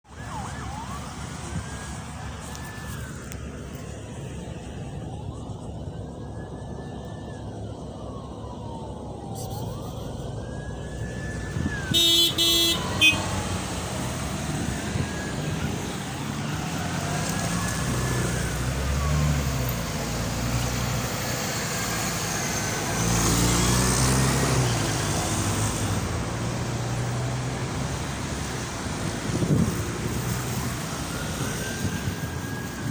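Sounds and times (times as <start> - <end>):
cars passing: 8.1 - 32.9
car horn tooting: 11.9 - 13.4.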